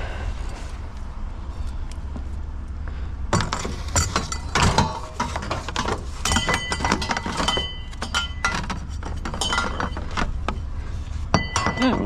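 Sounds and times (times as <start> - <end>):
steady low hum: 0.0 - 12.0
light bulbs rattling together: 3.3 - 12.0
glass and metal clinking: 3.4 - 10.7, 11.3 - 12.0.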